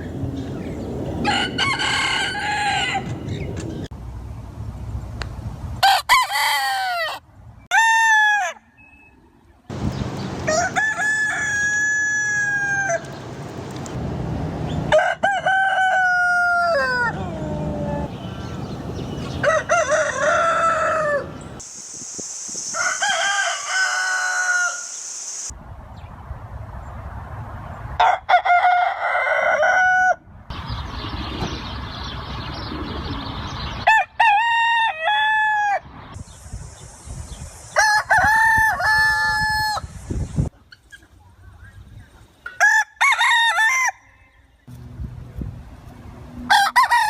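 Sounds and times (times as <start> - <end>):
roosters crowing: 1.1 - 3.5, 5.8 - 8.7, 9.7 - 13.3, 14.8 - 21.6, 22.6 - 25.1, 28.0 - 30.3, 33.8 - 35.9, 37.7 - 40.0, 42.6 - 44.6, 46.4 - 47.0
steady high hiss: 21.6 - 25.5, 36.2 - 37.8.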